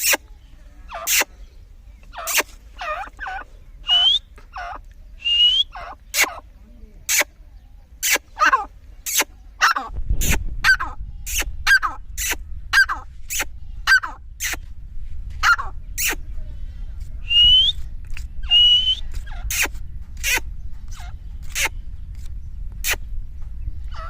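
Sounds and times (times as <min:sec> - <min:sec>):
partridge calling: 0:00.0 - 0:14.7, 0:15.4 - 0:16.2, 0:17.2 - 0:24.0
rising whistled notes: 0:05.2 - 0:05.7, 0:17.3 - 0:17.8, 0:18.5 - 0:19.1
low rumble: 0:08.7 - 0:24.0.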